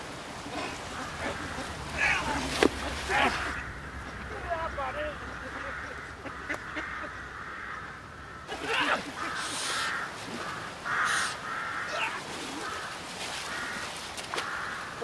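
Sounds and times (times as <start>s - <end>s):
crows cawing: 3.1s - 4.4s, 5.2s - 15.0s.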